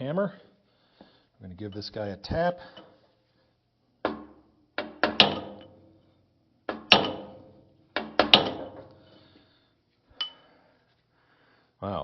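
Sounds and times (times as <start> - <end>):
hammer striking metal punch: 4.0 - 5.9, 6.7 - 9.0.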